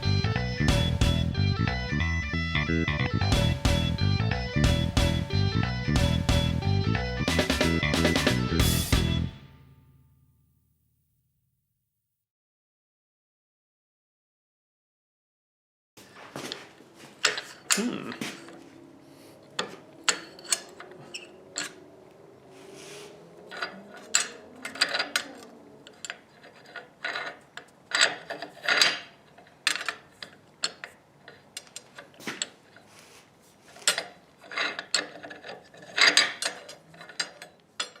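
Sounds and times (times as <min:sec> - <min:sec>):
metal parts and tools clanking: 0:16.0 - 0:32.9, 0:33.5 - 0:38.0.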